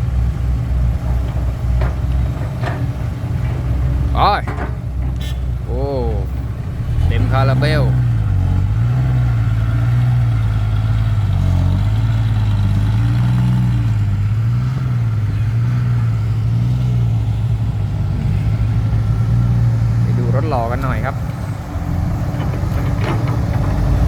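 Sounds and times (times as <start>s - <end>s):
diesel engine running: 0.0s - 24.0s.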